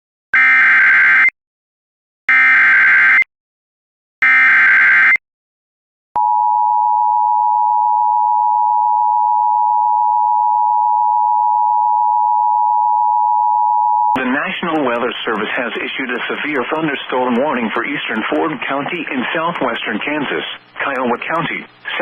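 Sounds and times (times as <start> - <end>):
steady attention-signal tone: 6.2 - 14.4.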